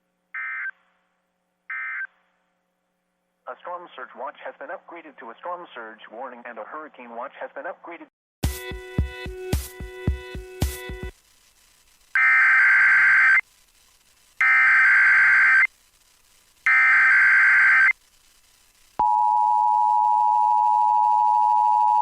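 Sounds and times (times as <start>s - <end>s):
digital data bursts: 10.9s - 19.0s
steady warning alarm tone: 12.2s - 13.4s, 14.4s - 15.7s, 16.7s - 17.9s.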